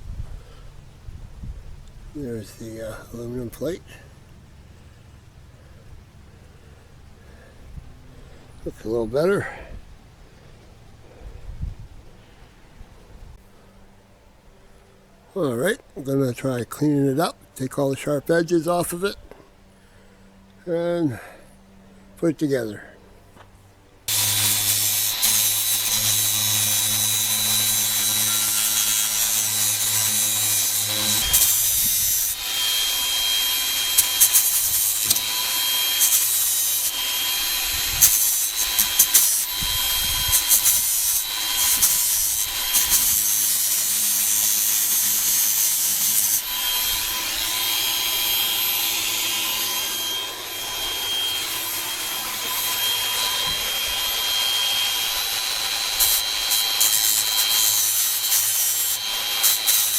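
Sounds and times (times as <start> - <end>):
electric grinder whine: 24.0 - 59.9
metal scraping against grinder: 24.1 - 59.9.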